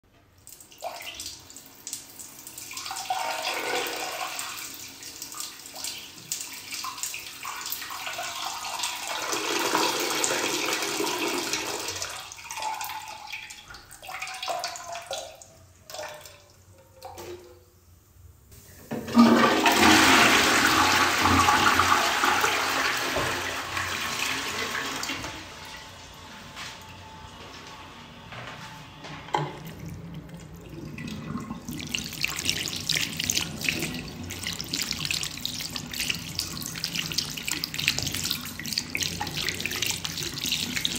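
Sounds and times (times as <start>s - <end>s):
urine splashing into toilet: 0.4s - 17.4s, 18.9s - 25.8s, 29.4s - 40.9s
toilet flushing: 0.6s - 17.8s, 18.6s - 40.9s.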